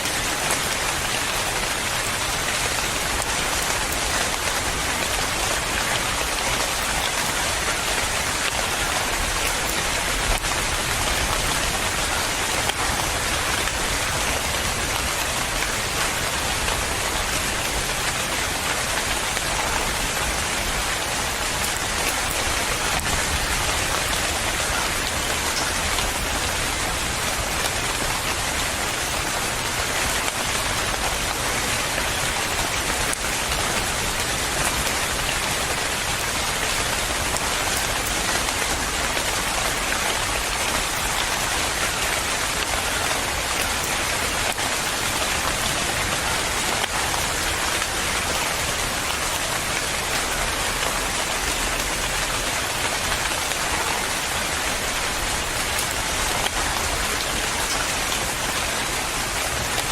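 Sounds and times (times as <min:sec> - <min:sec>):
individual raindrops pattering: 0:00.0 - 0:59.9
steady rain falling: 0:00.0 - 0:59.9.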